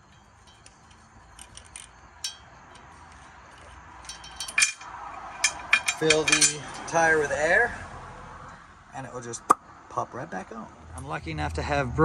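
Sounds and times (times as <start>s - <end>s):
metallic tool clicks and clinks: 0.0s - 7.0s.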